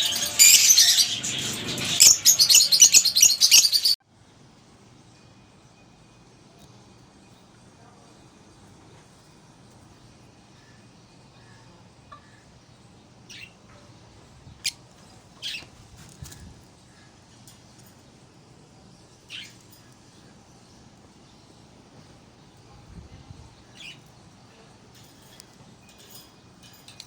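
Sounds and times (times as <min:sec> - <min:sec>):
parakeet calls: 0:00.0 - 0:04.0.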